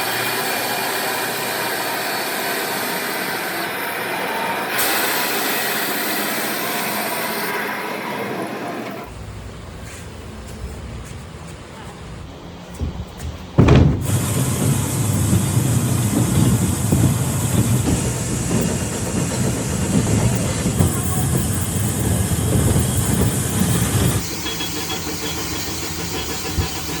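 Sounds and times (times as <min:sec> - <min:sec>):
factory machinery rumbling: 0:07.1 - 0:27.0
thump: 0:12.8 - 0:14.3.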